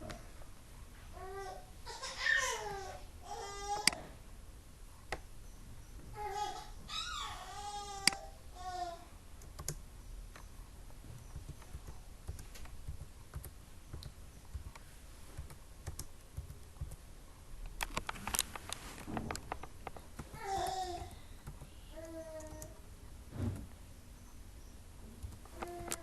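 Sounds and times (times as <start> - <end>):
keyboard typing clicks: 9.4 - 10.5, 11.1 - 17.0, 19.2 - 22.8.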